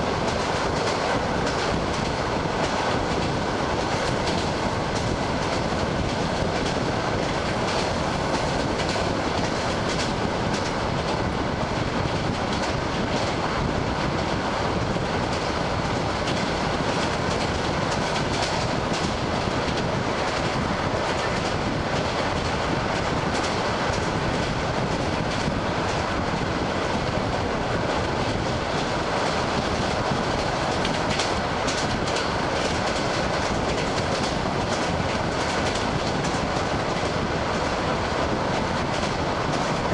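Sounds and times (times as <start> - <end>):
train wheels rumbling on track: 0.0 - 39.9.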